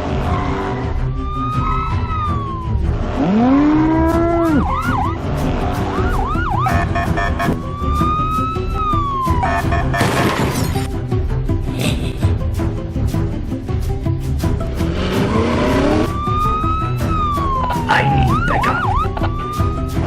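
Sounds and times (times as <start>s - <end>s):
police sirens wailing: 0.2s - 10.0s, 15.2s - 20.0s.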